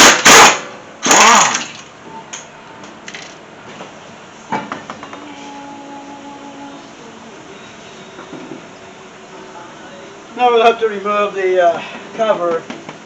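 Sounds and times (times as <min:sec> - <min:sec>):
impact wrench bursts: 0:00.0 - 0:01.8
faint steady hum: 0:00.0 - 0:13.0.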